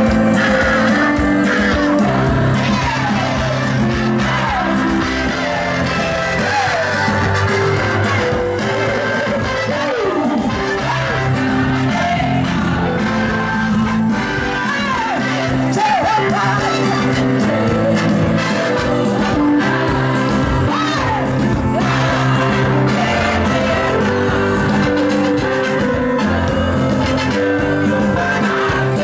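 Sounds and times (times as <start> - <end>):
instrumental backing: 0.0 - 29.0
person singing: 0.0 - 29.0.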